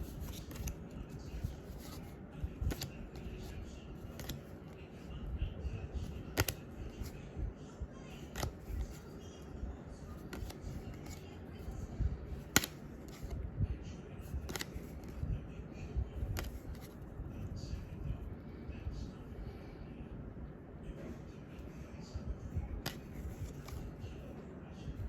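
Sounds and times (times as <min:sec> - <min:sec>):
trading cards clicking and snapping: 0:00.0 - 0:04.7, 0:06.0 - 0:07.2, 0:08.1 - 0:09.1, 0:10.2 - 0:11.3, 0:12.3 - 0:13.4, 0:14.4 - 0:15.2, 0:16.3 - 0:17.0, 0:22.8 - 0:23.9.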